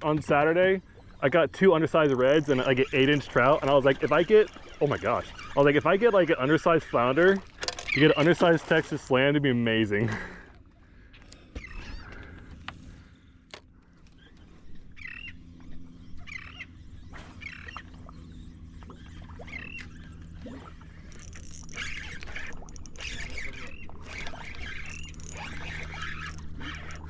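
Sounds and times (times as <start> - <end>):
gulls calling: 0.0 - 27.0
steady low hum: 9.7 - 27.0.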